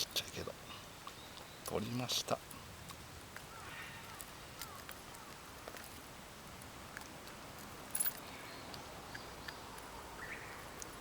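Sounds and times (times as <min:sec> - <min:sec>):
lure hooks clinking: 0:07.9 - 0:08.3.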